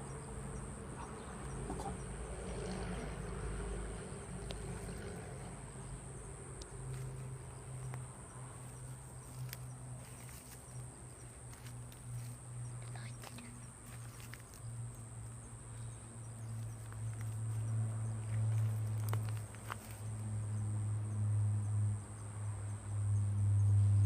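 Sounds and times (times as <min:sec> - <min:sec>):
crickets singing: 0:00.0 - 0:24.0
small ticks: 0:04.4 - 0:05.5, 0:06.6 - 0:20.6.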